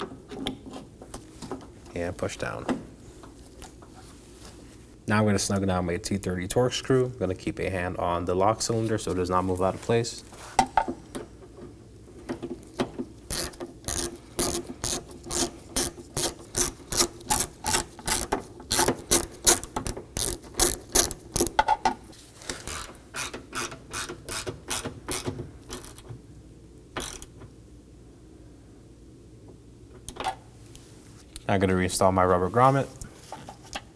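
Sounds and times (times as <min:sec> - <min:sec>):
ratchet pawl clicks: 0:13.3 - 0:21.6, 0:22.7 - 0:26.0.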